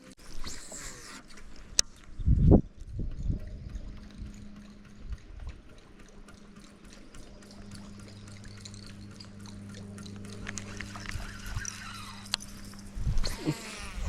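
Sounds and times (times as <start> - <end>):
steady low hum: 0.0 - 14.0
water pattering and splashing: 0.0 - 14.0
small scattered ticks: 0.2 - 14.0.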